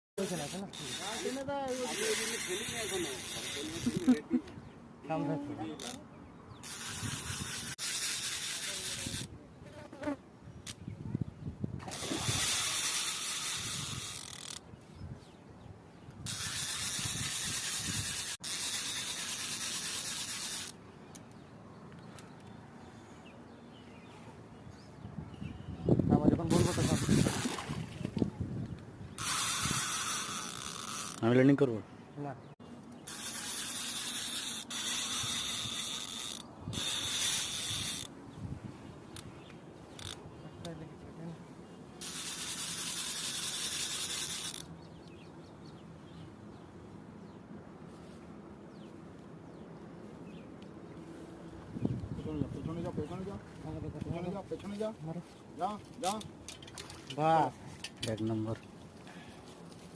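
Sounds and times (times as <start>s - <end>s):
fishing reel drag buzzing: 0.2s - 4.2s, 5.8s - 6.0s, 6.6s - 9.3s, 11.8s - 14.6s, 16.2s - 20.8s, 26.5s - 27.8s, 29.1s - 31.4s, 33.0s - 38.1s, 39.9s - 40.2s, 42.0s - 44.7s.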